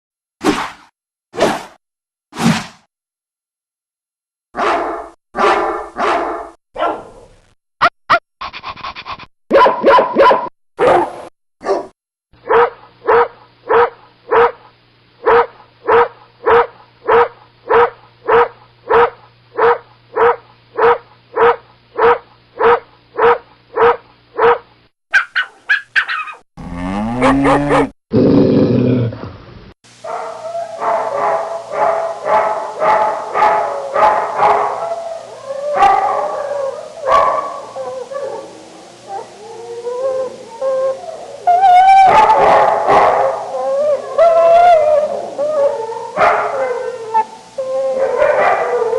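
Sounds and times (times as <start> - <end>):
dogs barking: 4.6 - 7.2, 9.5 - 11.9, 12.5 - 14.6, 15.2 - 26.4, 27.2 - 27.9, 30.0 - 35.0, 35.7 - 36.3, 37.0 - 37.7, 42.0 - 43.5, 46.2 - 46.6, 48.0 - 48.9
dog yelping: 15.3 - 26.4, 41.5 - 43.3, 46.2 - 46.6.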